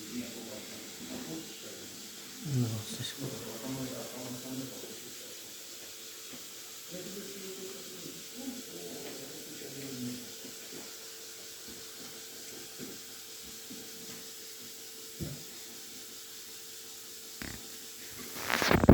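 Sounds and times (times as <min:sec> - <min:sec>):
steady hiss: 0:00.0 - 0:10.3
faint machinery hum: 0:00.0 - 0:16.1.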